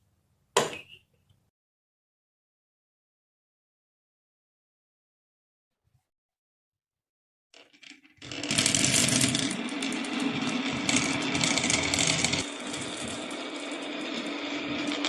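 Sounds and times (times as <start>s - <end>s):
marbles rattling down a track: 7.6s - 15.0s.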